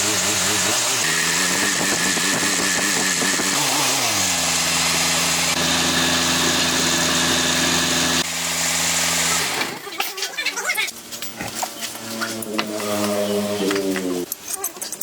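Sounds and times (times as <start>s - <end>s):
vehicle engine idling: 0.0s - 9.6s.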